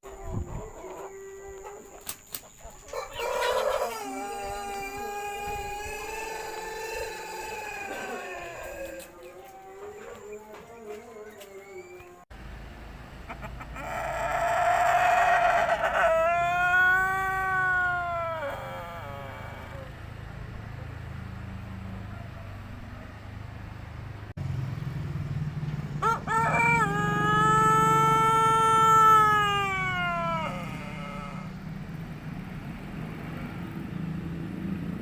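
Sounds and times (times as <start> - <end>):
rooster crowing: 0.1 - 1.9, 2.8 - 12.2, 13.8 - 20.0, 26.0 - 31.6.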